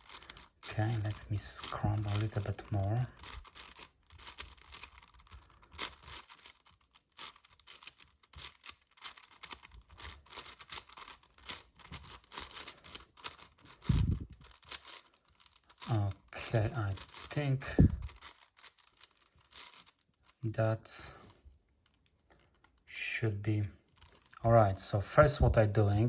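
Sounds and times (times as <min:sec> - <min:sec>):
puzzle cube clicking: 0:00.0 - 0:20.4.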